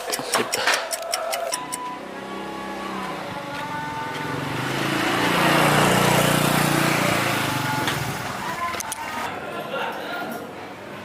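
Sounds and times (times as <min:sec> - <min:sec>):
vehicle engine passing by: 0:01.6 - 0:09.3.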